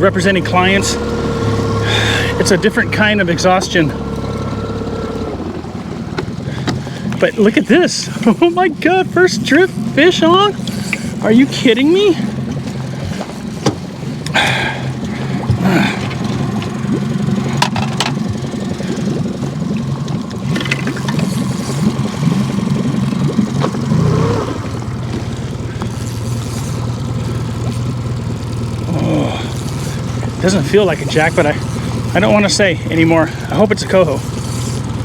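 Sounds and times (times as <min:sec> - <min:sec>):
boat motor running: 0:00.0 - 0:35.0
knocks and rattles: 0:17.5 - 0:21.9.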